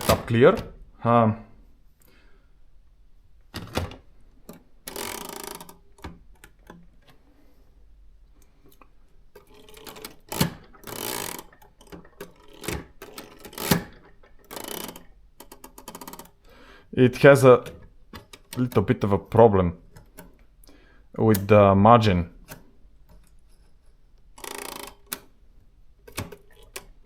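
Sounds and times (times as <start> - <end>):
typewriter carriage ratcheting: 0.0 - 0.7, 3.6 - 6.8, 9.4 - 16.4, 17.5 - 19.2, 24.3 - 25.2, 26.1 - 27.0
typewriter key and lever clicks: 0.0 - 0.7, 9.4 - 16.4, 24.3 - 25.3, 26.0 - 27.0.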